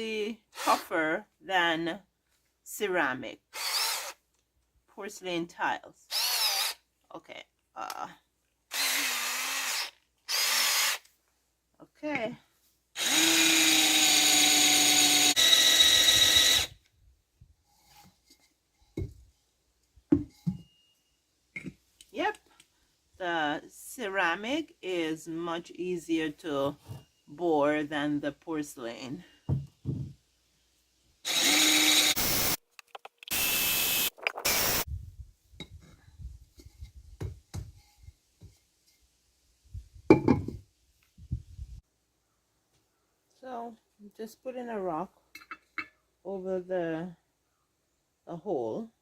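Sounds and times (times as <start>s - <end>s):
electric drill boring ceramic: 3.6s - 4.2s, 6.1s - 6.8s, 8.7s - 11.0s, 13.0s - 16.8s, 31.3s - 32.6s, 33.3s - 34.9s
pot handled with knocks: 20.1s - 20.8s, 21.5s - 21.8s, 40.1s - 40.6s, 45.3s - 46.0s.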